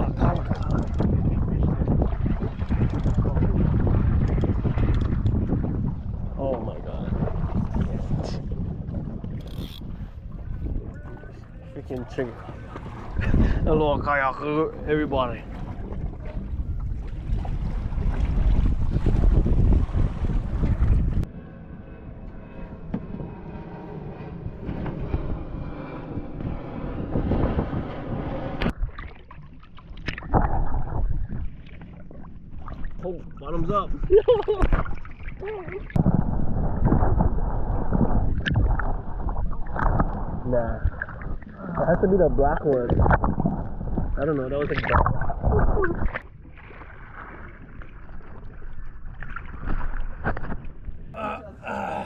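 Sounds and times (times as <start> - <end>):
water and boat hull noise: 0.0 - 21.3, 26.0 - 51.9
wind buffeting microphone: 0.0 - 29.0, 30.3 - 46.6
boat motor running: 2.6 - 28.7.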